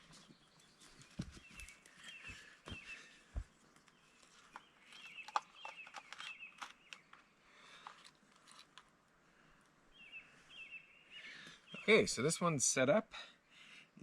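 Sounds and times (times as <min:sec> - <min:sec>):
handling clicks and rustles: 0:03.8 - 0:09.0.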